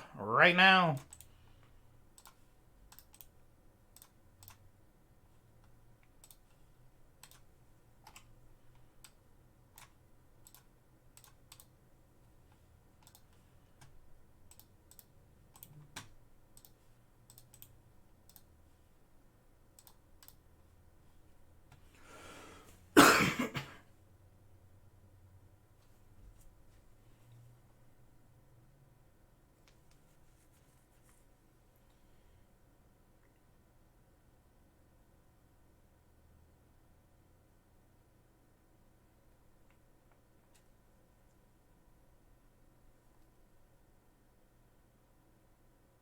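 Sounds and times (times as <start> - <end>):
computer keyboard clicks: 2.1 - 4.6, 7.2 - 8.3, 9.8 - 11.7, 13.0 - 18.5, 19.8 - 20.4
faint breath: 21.9 - 22.8
loud cough: 23.0 - 23.8.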